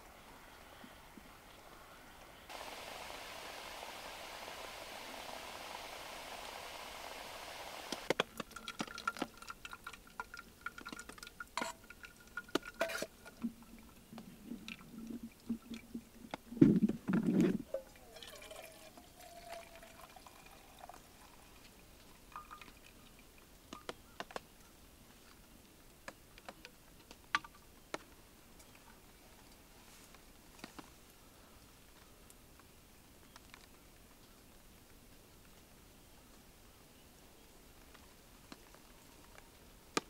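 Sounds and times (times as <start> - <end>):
liquid pouring and dripping: 8.0 - 16.5, 17.6 - 23.5.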